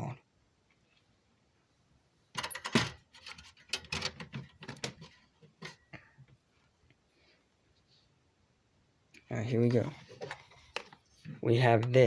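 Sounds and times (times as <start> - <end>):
hardware handling clicks and knocks: 2.4 - 5.8.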